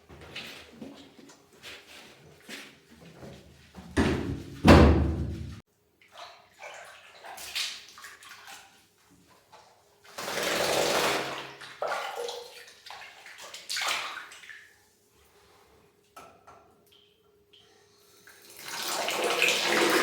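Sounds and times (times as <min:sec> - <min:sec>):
water splashing and running: 0:10.1 - 0:14.7.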